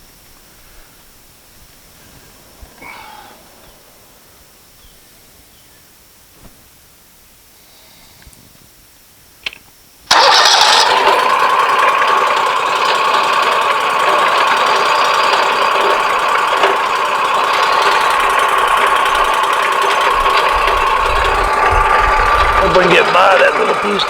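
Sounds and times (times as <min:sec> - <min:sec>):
engine starting and whining: 0:01.2 - 0:05.2, 0:10.1 - 0:24.0.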